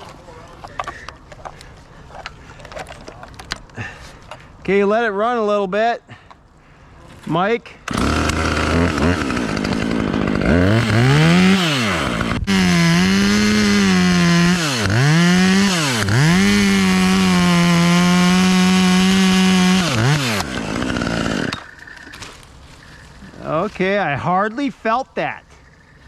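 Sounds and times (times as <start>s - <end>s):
chainsaw revving: 7.9s - 22.1s.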